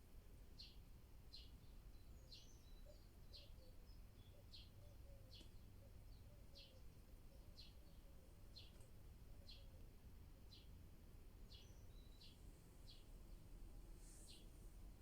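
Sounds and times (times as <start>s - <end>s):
soft outdoor background noise: 0.0s - 15.0s.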